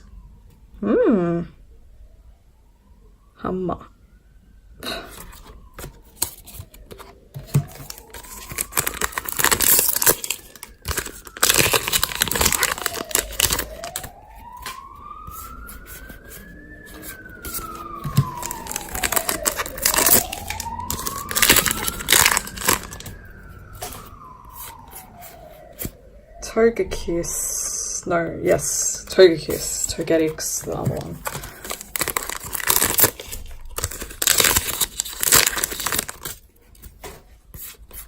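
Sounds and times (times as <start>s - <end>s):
distant siren wailing: 0.0s - 38.0s
foil wrappers tearing and crinkling: 4.9s - 23.2s, 29.1s - 38.0s
cards being handled: 5.1s - 23.2s, 29.4s - 38.0s.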